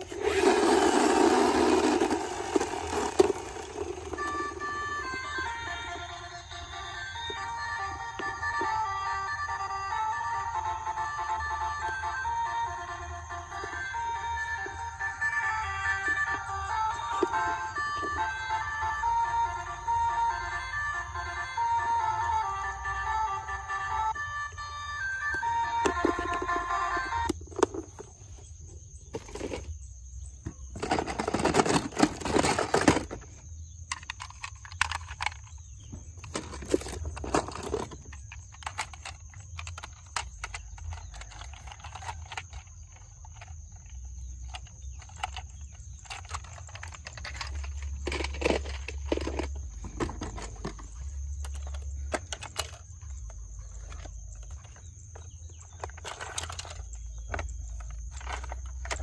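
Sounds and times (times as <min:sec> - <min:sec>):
plastic toy cars clicking and rattling: 0:00.0 - 0:09.2, 0:13.2 - 0:18.6, 0:25.3 - 0:28.4, 0:29.1 - 0:29.8, 0:30.4 - 0:59.0.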